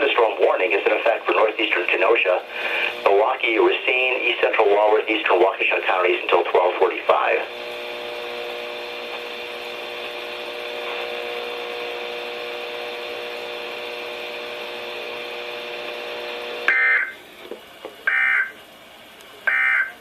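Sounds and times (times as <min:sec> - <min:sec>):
radio receiver hiss: 0:00.0 - 0:09.4, 0:10.0 - 0:11.5
high-pitched data tone bursts: 0:18.1 - 0:18.6, 0:19.5 - 0:20.0.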